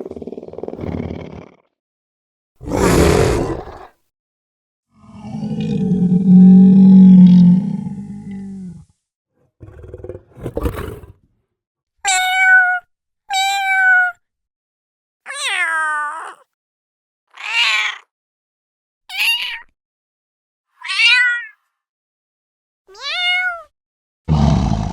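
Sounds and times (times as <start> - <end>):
low deep roar: 2.6 - 3.9, 5.0 - 11.2, 24.3 - 24.9
cat meowing: 12.1 - 14.2, 15.3 - 16.4, 20.8 - 21.5, 22.9 - 23.7.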